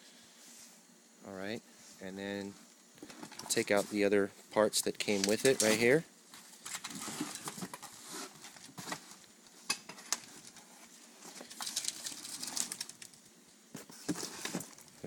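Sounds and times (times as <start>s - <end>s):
packaging rustling and crinkling: 5.0s - 9.3s, 9.9s - 13.2s, 13.8s - 15.0s.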